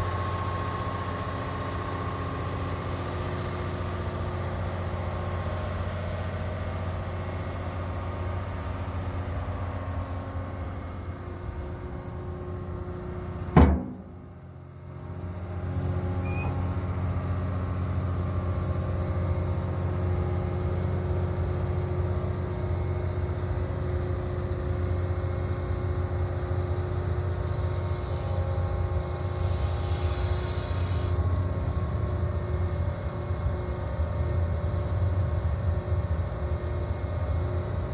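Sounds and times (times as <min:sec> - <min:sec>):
diesel engine running: 0:00.0 - 0:37.8
sharp knock: 0:13.6 - 0:14.2.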